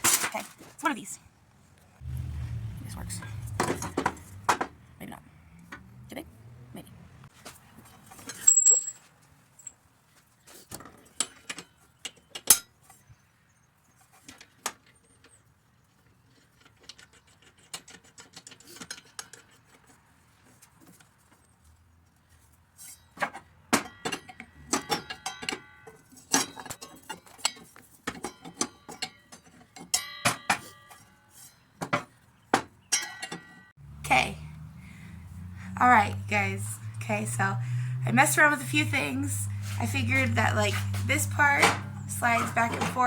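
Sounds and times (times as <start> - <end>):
metal hand tools clinking: 8.2 - 9.8.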